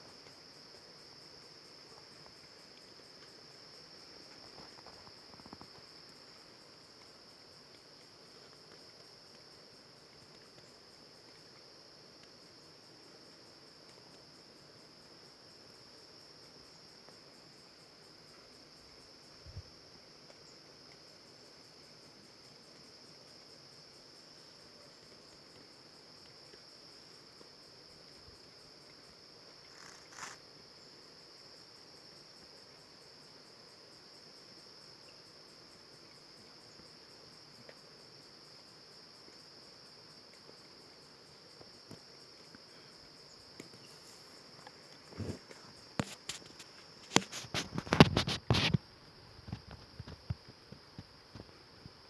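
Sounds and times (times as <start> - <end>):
chorus of crickets: 0.0 - 52.0
insects chirring: 0.0 - 52.0
brief rustle: 29.7 - 30.4, 43.6 - 48.8.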